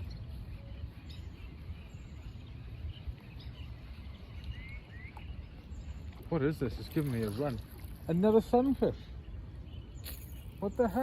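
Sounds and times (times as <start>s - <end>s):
rising bird chirps: 0.0s - 6.3s.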